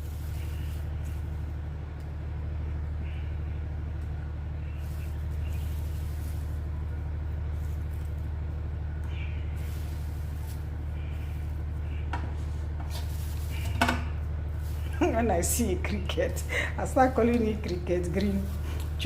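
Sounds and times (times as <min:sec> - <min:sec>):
low mechanical rumble: 0:00.0 - 0:19.0.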